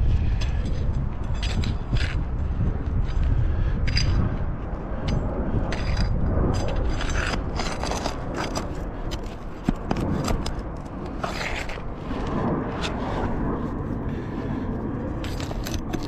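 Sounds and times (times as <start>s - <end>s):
low rumble: 0.0s - 16.0s
hand tool scraping shingles: 5.1s - 13.2s, 15.2s - 16.0s.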